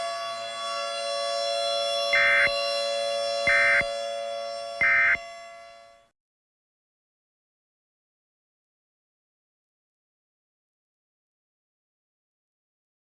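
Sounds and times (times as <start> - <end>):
siren-like drone: 0.0 - 6.1
digital data bursts: 3.5 - 3.8.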